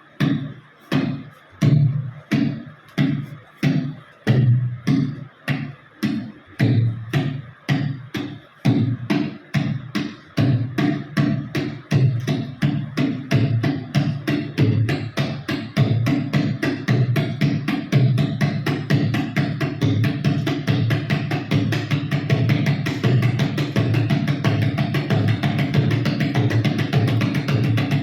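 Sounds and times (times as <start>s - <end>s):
tabla strokes: 0.0s - 28.0s.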